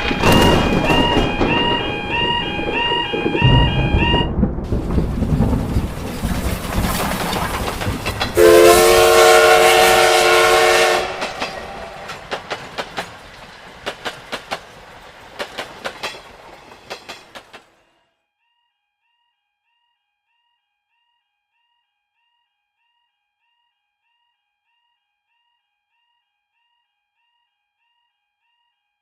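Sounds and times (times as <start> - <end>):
wheels clicking over rail joints: 0.0 - 4.1, 4.7 - 17.8
train whistle blast: 0.0 - 4.3, 8.4 - 12.4
train rumble: 0.0 - 17.8.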